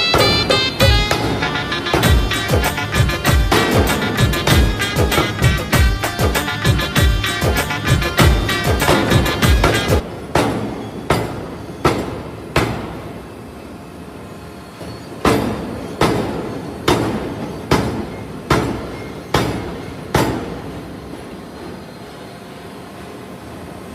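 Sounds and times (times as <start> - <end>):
hammer striking metal: 0.0 - 13.1, 15.2 - 20.8.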